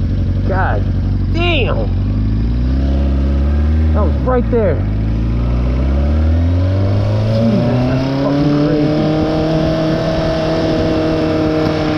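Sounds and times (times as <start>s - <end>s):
motorcycle engine accelerating: 0.0s - 11.9s.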